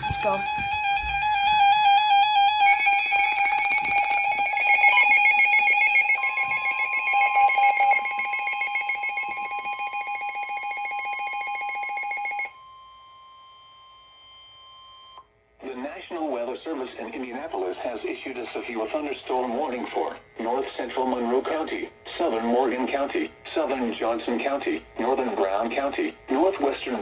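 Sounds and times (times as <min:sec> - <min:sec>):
person speaking warning message: 0:00.0 - 0:00.8
electronic alarm tone: 0:00.0 - 0:15.2.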